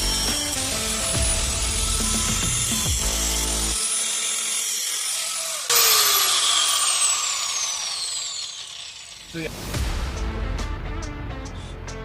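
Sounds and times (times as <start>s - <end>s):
power tool whining: 0.0s - 9.6s.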